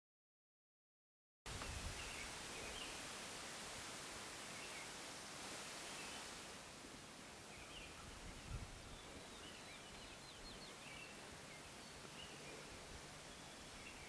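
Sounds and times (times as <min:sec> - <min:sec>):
steady hiss: 0:01.5 - 0:14.0
distant birds chirping: 0:07.2 - 0:14.0.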